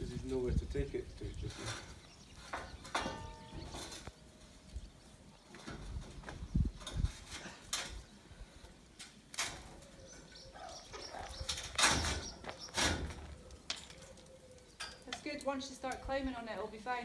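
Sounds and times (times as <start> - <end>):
metal rattling bursts: 11.0 - 14.2.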